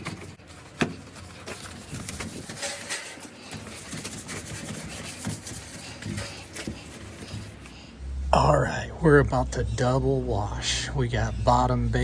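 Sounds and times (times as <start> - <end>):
rubbing and scraping handling noises: 0.0 - 8.0.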